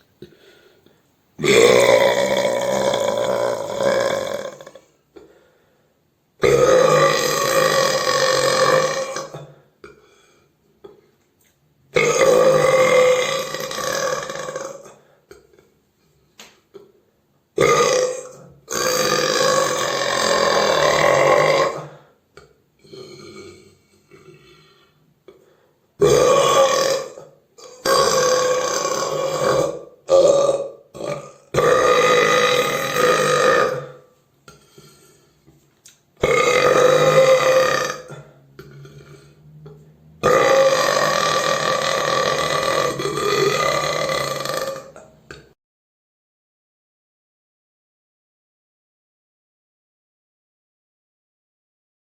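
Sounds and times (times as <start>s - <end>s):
person burping: 1.4s - 5.4s, 6.4s - 11.1s, 11.9s - 15.8s, 16.7s - 17.0s, 17.6s - 35.4s, 36.2s - 45.6s.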